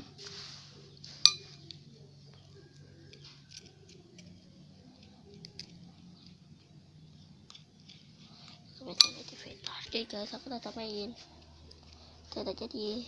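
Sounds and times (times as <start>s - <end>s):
utensil clinking against container: 1.2s - 1.8s, 7.5s - 9.6s.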